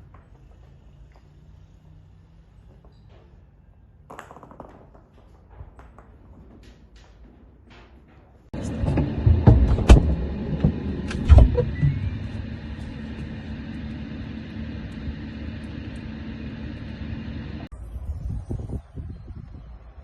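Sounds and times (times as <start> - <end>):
low rumble with hum: 8.5 - 19.9.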